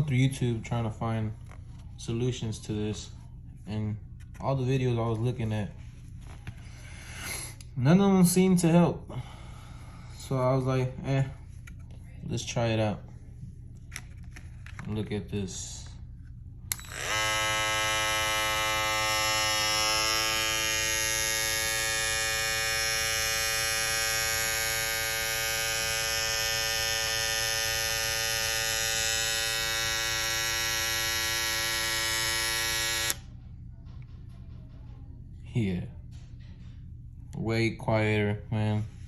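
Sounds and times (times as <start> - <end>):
hair trimmer buzzing: 16.7 - 33.2.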